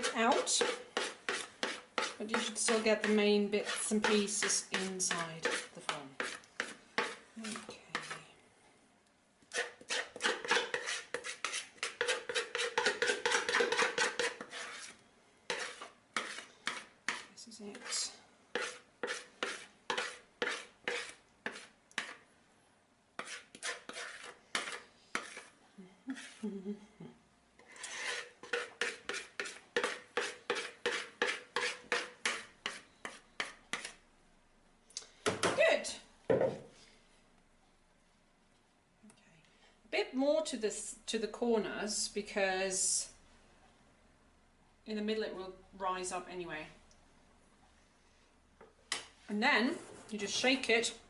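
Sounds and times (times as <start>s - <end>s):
utensil scraping batter from bowl: 0.0s - 8.3s, 9.5s - 22.3s, 23.2s - 26.4s, 27.7s - 34.0s.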